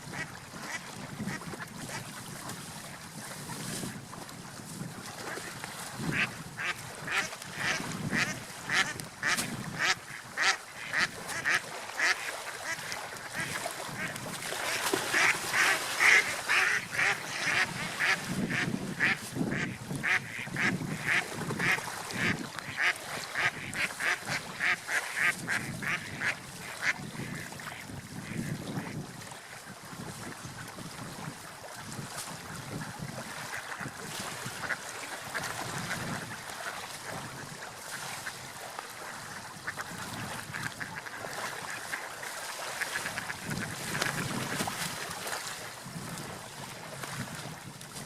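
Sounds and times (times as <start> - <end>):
ducks quacking: 6.1 - 29.0, 39.6 - 42.1.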